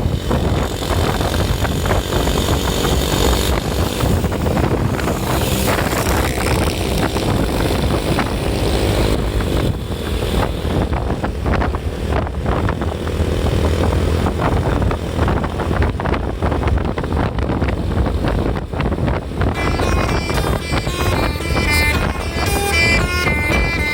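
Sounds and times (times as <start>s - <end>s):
wind buffeting microphone: 0.0s - 23.9s
low engine drone: 19.3s - 23.9s.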